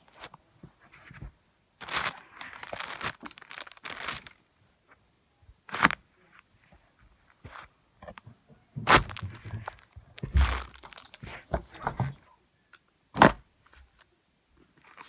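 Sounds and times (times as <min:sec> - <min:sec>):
objects crunching underfoot: 0:01.8 - 0:04.3, 0:08.8 - 0:12.2
heavy thud: 0:08.8 - 0:11.0.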